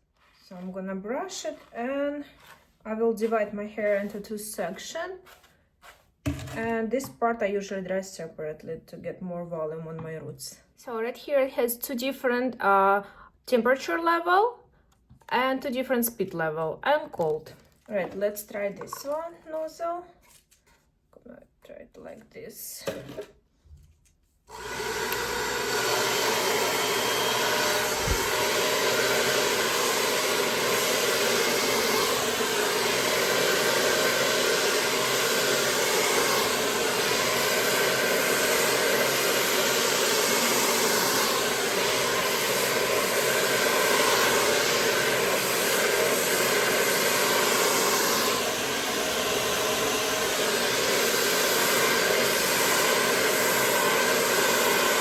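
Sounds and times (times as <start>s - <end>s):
hair dryer blowing: 18.0s - 19.3s, 24.5s - 55.0s.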